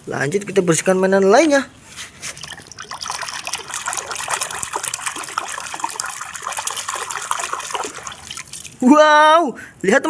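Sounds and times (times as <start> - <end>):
water running and splashing: 1.1 - 8.9.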